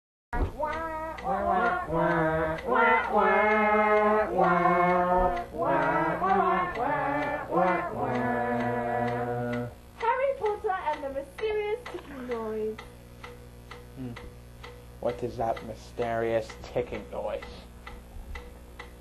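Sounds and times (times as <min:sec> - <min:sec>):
voices singing wordless chant: 0:00.6 - 0:12.8.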